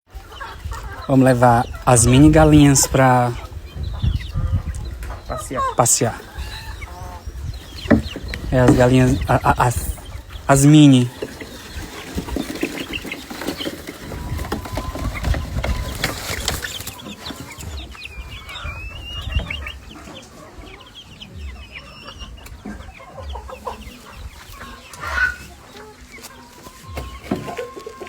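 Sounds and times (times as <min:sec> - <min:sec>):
hens clucking: 0:00.1 - 0:28.0
low uneven thumping: 0:07.2 - 0:10.5.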